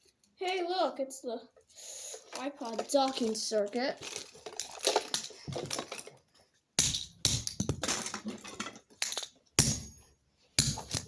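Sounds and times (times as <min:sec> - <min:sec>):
plastic pieces clattering and crunching: 0:02.3 - 0:09.8.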